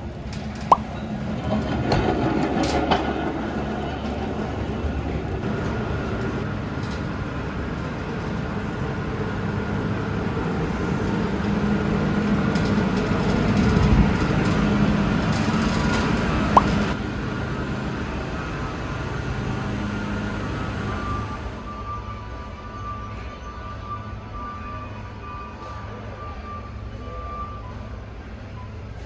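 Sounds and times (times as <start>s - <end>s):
low machinery rumble: 0.0s - 21.8s
faint hum: 5.4s - 21.9s.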